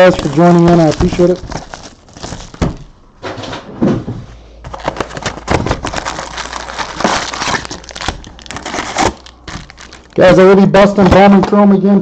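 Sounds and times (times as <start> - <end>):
foil packs crinkling: 0.0 - 2.9, 4.7 - 10.4.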